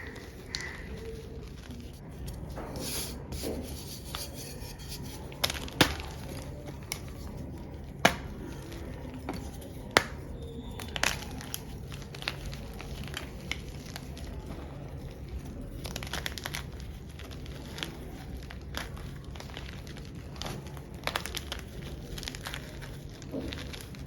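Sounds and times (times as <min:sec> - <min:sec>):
chalk crumbling and crackling: 0:00.0 - 0:24.0
chalk pieces snapping: 0:09.9 - 0:12.5.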